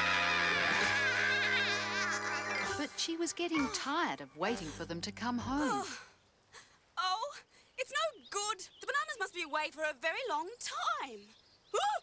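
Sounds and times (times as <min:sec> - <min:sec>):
background music with held low notes: 0:00.0 - 0:05.8.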